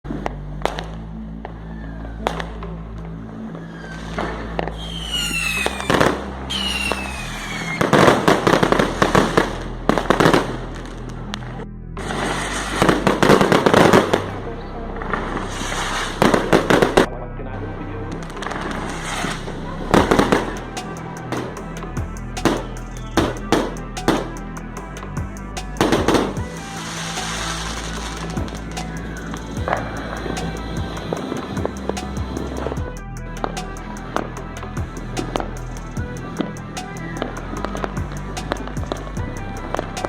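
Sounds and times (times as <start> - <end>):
background music with low bass: 0.0 - 40.0
fireworks bangs: 3.9 - 10.5
falling firework whistles: 4.8 - 8.4.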